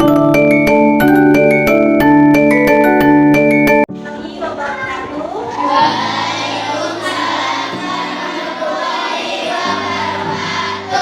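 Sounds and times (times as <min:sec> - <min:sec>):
held accompaniment chord: 0:00.0 - 0:04.1
group of voices singing: 0:05.6 - 0:11.0.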